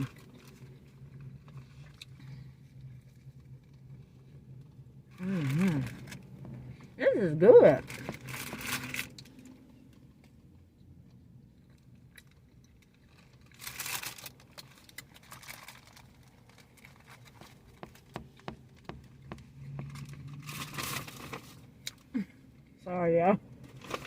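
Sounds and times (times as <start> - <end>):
paper wrapper crinkling: 13.1 - 17.7.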